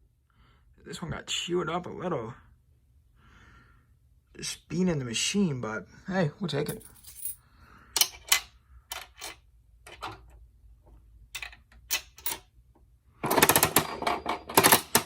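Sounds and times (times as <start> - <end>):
vending machine crank ratcheting: 13.2 - 15.0.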